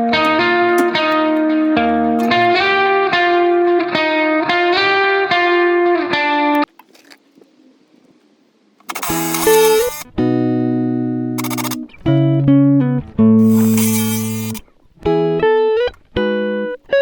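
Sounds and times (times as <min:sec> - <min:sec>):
plucked guitar music: 0:00.0 - 0:06.6.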